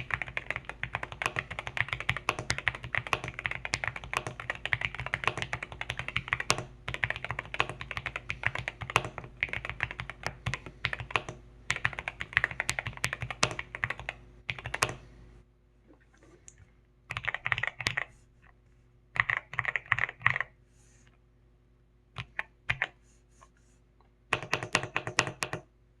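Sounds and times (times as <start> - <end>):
mechanical keyboard typing: 0.0 - 15.0, 17.1 - 18.1, 19.2 - 20.5, 24.3 - 25.7.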